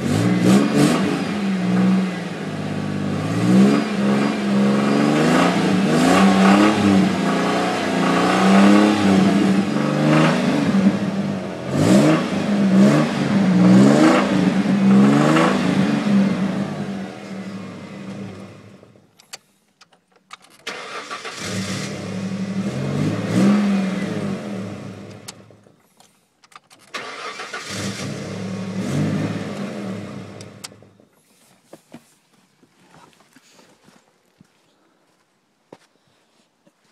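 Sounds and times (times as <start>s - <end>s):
car engine revving: 0.0s - 19.0s, 20.6s - 25.6s, 26.9s - 30.9s.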